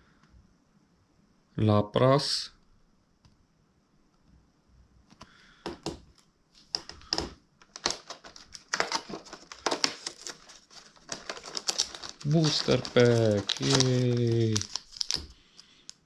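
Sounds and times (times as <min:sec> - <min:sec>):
packaging rustling and crinkling: 0:06.6 - 0:16.0.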